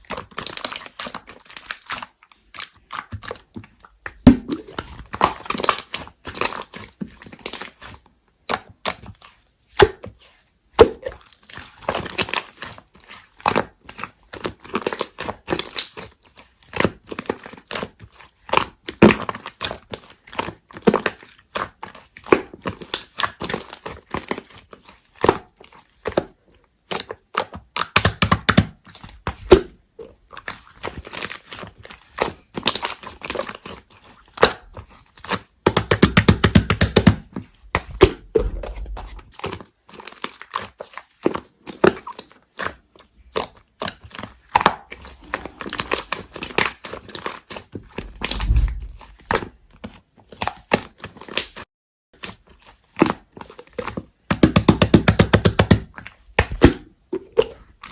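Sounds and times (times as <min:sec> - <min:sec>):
slime crackling and popping: 0:10.8 - 0:51.6
low rumble: 0:48.1 - 0:49.1.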